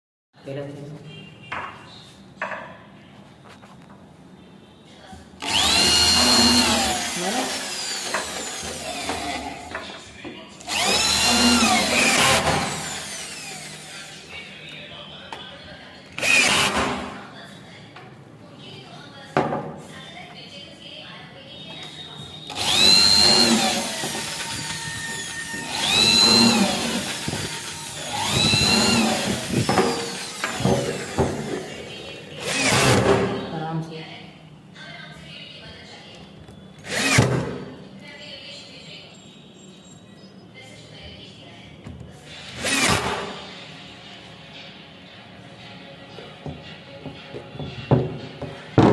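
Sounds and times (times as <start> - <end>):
power drill whining: 5.4 - 9.7, 10.6 - 14.4, 16.2 - 16.9, 22.5 - 33.1, 36.8 - 37.4, 42.6 - 43.1.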